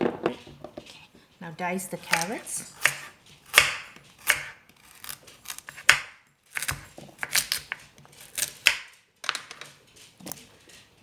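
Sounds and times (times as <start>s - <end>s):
knife chopping carrots: 1.9s - 8.9s.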